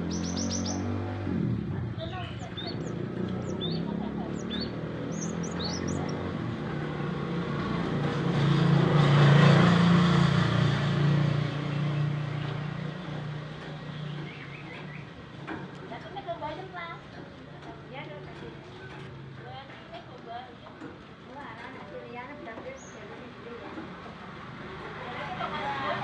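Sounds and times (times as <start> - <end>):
high bird chirps: 0.0 - 1.0, 2.4 - 6.2, 14.2 - 15.1
vehicle passing by: 0.0 - 15.3, 23.9 - 26.0.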